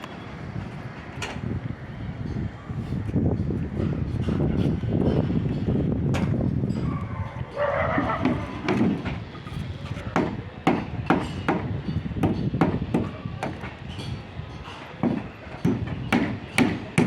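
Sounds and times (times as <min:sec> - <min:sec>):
hammer striking: 0:08.2 - 0:09.2, 0:10.1 - 0:13.7, 0:15.0 - 0:17.0.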